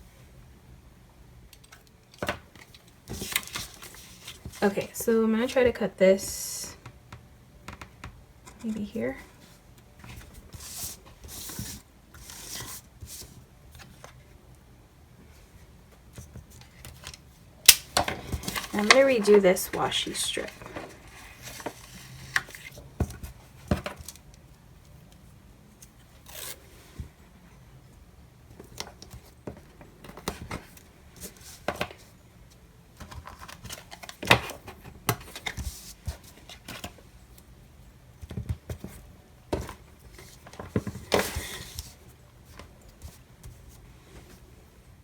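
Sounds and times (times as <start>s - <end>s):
tape peeling and rustling: 25.8s - 26.7s.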